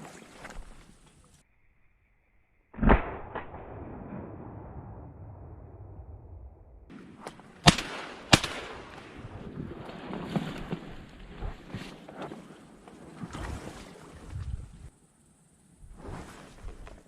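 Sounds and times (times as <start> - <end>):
shotgun shots with echo: 2.8 - 5.0, 6.9 - 9.0
wind noise: 8.6 - 12.5, 13.1 - 14.9, 15.8 - 17.0.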